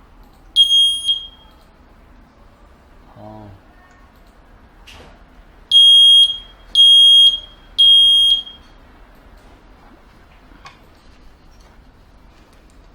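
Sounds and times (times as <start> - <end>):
smoke alarm beeping: 0.6 - 1.5, 5.7 - 8.7.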